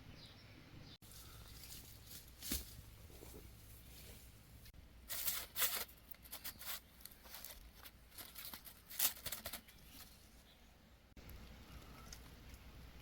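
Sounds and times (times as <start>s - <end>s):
rustling and scraping: 1.0s - 10.6s.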